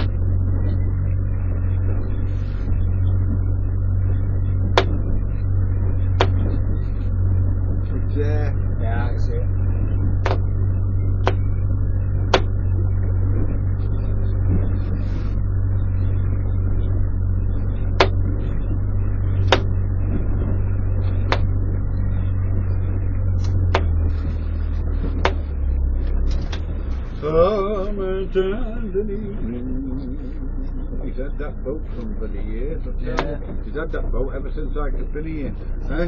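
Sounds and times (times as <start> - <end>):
steady low rumble: 0.0 - 36.0
sharp clicks or knocks: 6.2 - 6.6, 10.2 - 10.5, 18.0 - 18.2, 19.4 - 19.7, 21.3 - 21.5, 23.4 - 24.2.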